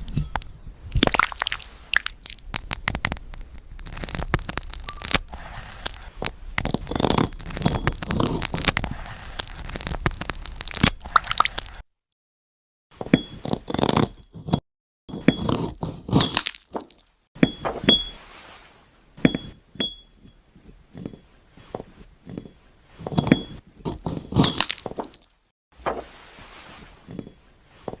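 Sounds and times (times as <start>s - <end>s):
glassy ringing tones: 0.0s - 0.7s, 2.2s - 9.7s, 11.4s - 11.8s, 17.4s - 18.2s, 19.2s - 20.4s
knife crunching through glass: 0.0s - 11.8s, 13.4s - 14.6s, 15.2s - 18.0s, 23.2s - 25.4s.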